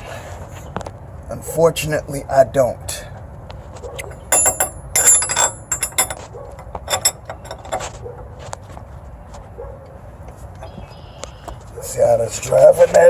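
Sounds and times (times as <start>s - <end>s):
wrench clinking on metal nut: 4.0s - 7.9s.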